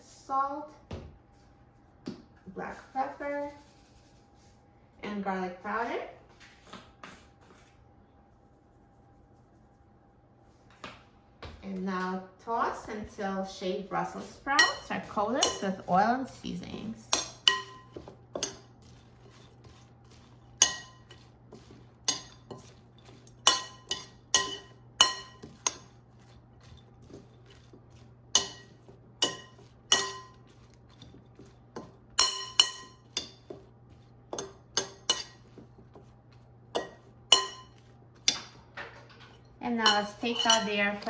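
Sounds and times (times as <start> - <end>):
utensils clinking against bowl: 14.0 - 41.0.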